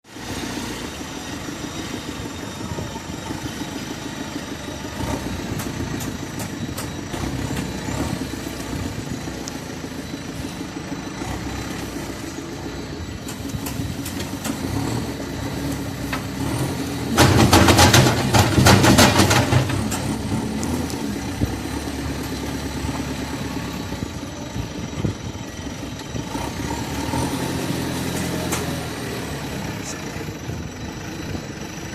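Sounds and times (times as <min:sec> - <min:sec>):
diesel engines running: 0:00.0 - 0:31.9
loud engine revving: 0:04.8 - 0:06.2, 0:07.1 - 0:24.7, 0:26.1 - 0:30.2.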